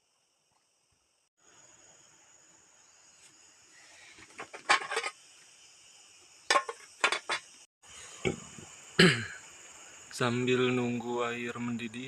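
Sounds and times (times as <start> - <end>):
high-pitched insect chorus: 0.0 - 12.0
pot and utensils clinking: 6.5 - 7.5.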